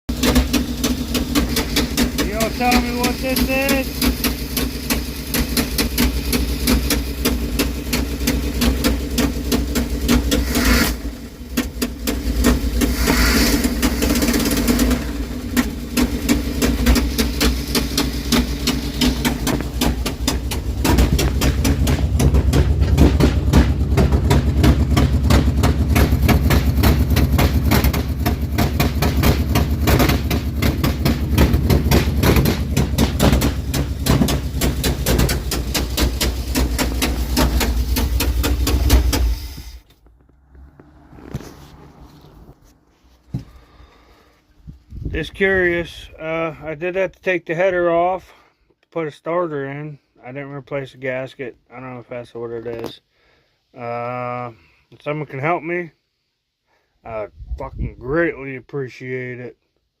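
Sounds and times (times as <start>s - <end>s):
rapid engine ticking: 0.1s - 39.9s
car engine running: 0.1s - 45.8s.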